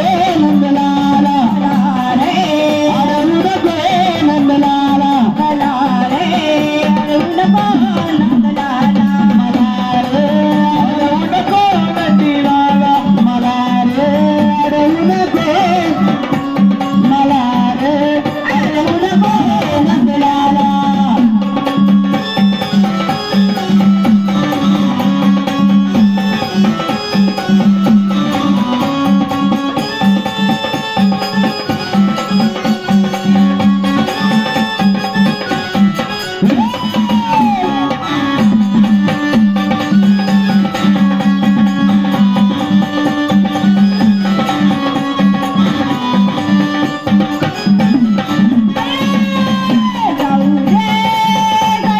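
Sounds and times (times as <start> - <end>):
hand drums: 0.0 - 51.9
melody instrument holding notes: 11.0 - 51.9.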